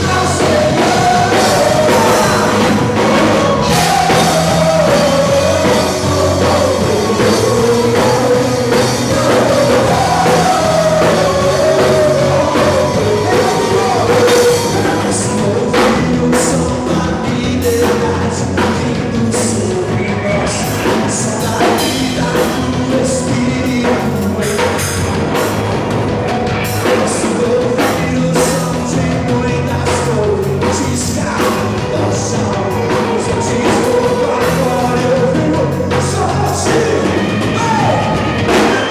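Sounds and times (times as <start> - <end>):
drum hits: 0.0 - 16.6
person singing: 0.0 - 25.1, 26.8 - 38.9
rock band playing: 0.0 - 38.9.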